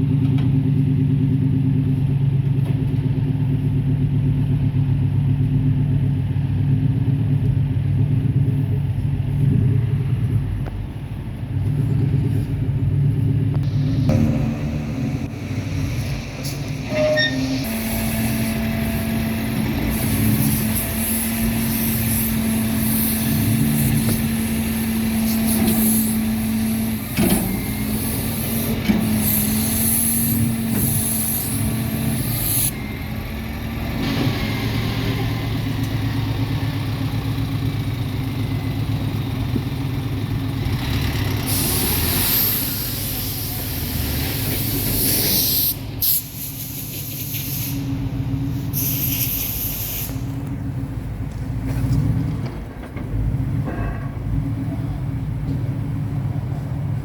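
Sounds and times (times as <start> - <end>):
loud car exhaust: 0.0 - 57.0
loud hissing: 13.7 - 32.8, 41.4 - 50.5.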